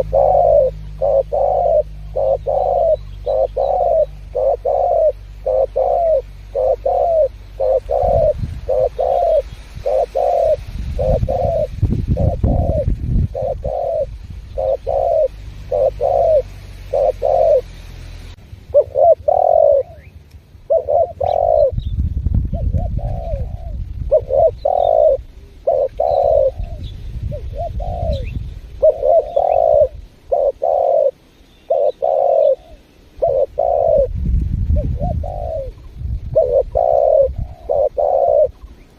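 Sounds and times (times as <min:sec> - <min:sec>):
dove cooing: 0:00.0 - 0:21.9, 0:22.5 - 0:38.9
low rumble: 0:20.6 - 0:25.7, 0:34.1 - 0:37.6.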